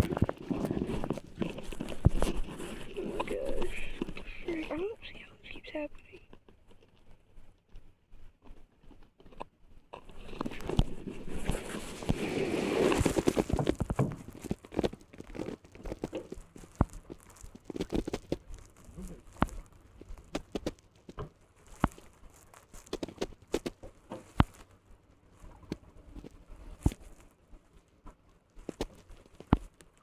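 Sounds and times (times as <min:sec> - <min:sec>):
rustling and crunching: 0:00.0 - 0:30.0.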